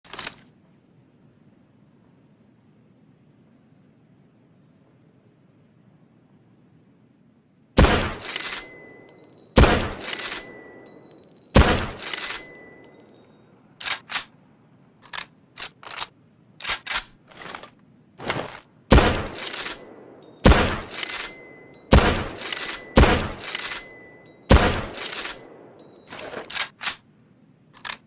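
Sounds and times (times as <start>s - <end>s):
rifle bolt clicking: 7.8s - 10.6s, 11.6s - 12.6s, 13.8s - 14.3s, 15.0s - 17.2s, 18.9s - 27.0s
rifle shots: 7.8s - 12.8s, 18.9s - 27.0s.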